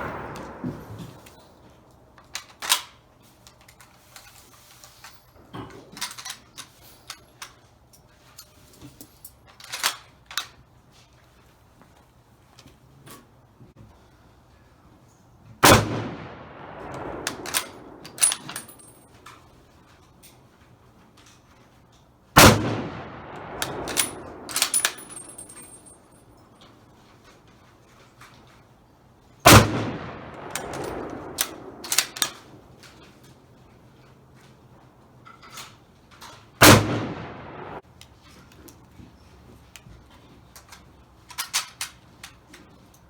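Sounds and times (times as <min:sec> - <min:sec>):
rifle shots echoing: 0:00.0 - 0:02.0, 0:15.6 - 0:19.0, 0:22.4 - 0:26.2, 0:29.5 - 0:33.0, 0:36.6 - 0:37.8
sharp metallic clinks: 0:17.2 - 0:19.2, 0:23.4 - 0:26.6, 0:30.3 - 0:32.5.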